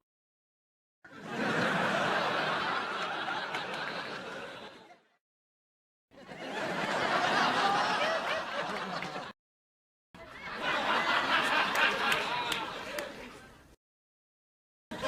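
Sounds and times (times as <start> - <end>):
canned audience laughter: 1.1 - 5.2, 6.2 - 9.4, 10.2 - 13.5.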